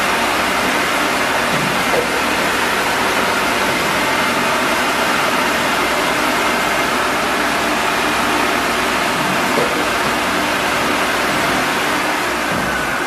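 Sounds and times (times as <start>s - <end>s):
wood-turning lathe running: 0.0s - 13.0s.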